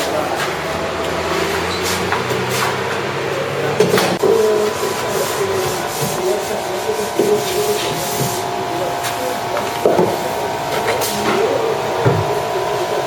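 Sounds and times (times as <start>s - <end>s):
steady hum: 0.0s - 13.0s
hand rubbing and scraping on wood: 4.2s - 11.2s.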